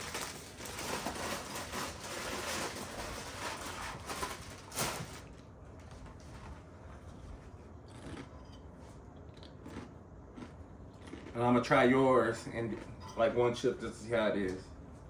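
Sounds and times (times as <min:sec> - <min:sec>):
rustling and crinkling handling noises: 0:00.0 - 0:07.6.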